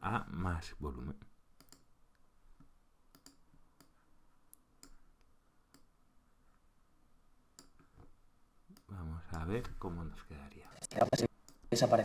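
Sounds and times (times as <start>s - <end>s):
faint computer mouse clicks: 1.6s - 1.9s, 3.1s - 5.0s.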